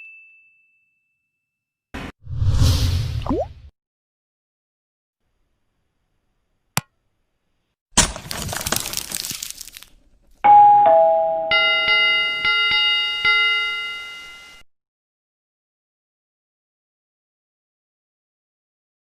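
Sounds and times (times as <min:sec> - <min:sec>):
falling ding-dong chime: 0:10.5 - 0:14.6.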